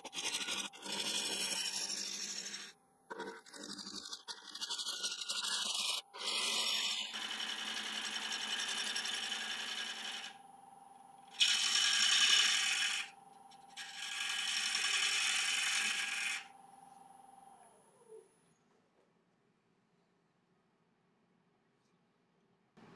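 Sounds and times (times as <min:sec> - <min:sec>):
turning tool cutting wood: 0:00.0 - 0:10.4, 0:11.3 - 0:16.5
lathe humming: 0:11.4 - 0:13.1, 0:13.9 - 0:16.4.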